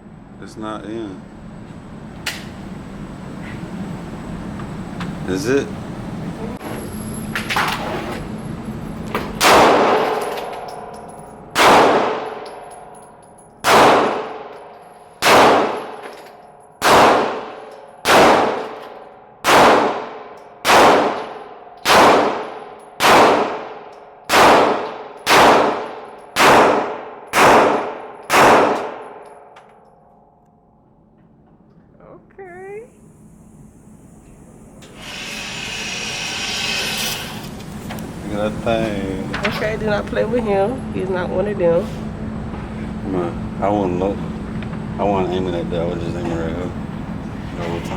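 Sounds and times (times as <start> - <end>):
handgun shots with metallic ringing: 9.4 - 29.9.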